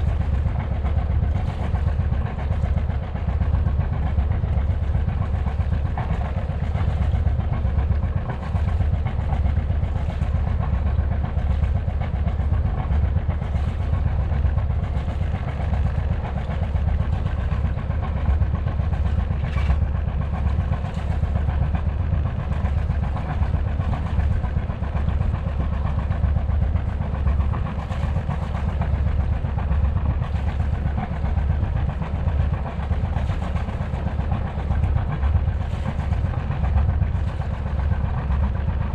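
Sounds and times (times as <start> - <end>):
diesel engine throbbing: 0.0 - 38.9.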